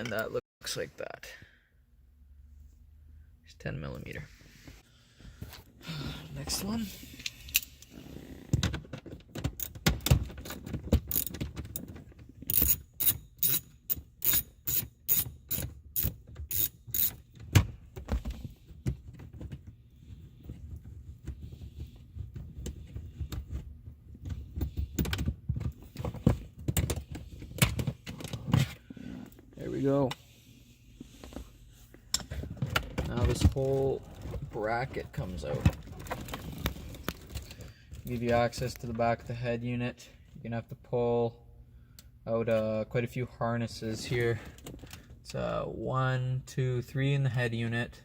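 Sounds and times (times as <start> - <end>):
ratchet wrench clicking: 12.5 - 17.2.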